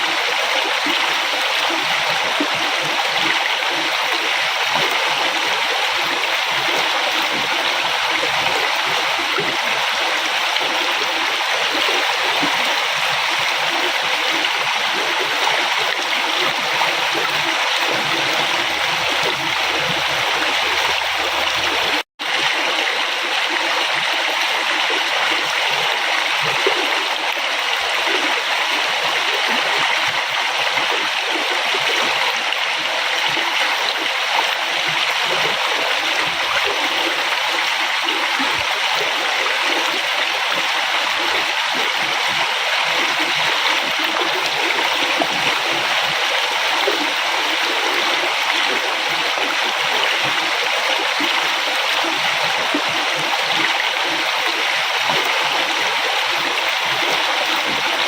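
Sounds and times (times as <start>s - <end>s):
river water rushing: 0.0s - 26.1s.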